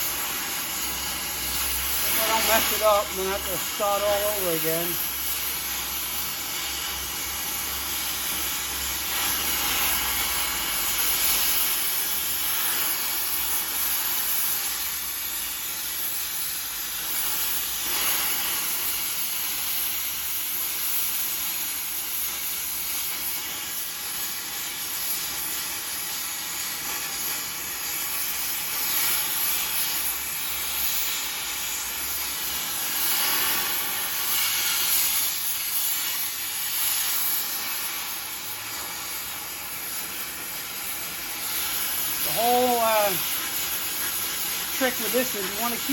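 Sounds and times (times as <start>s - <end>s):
gas torch flame hissing: 0.0s - 45.9s.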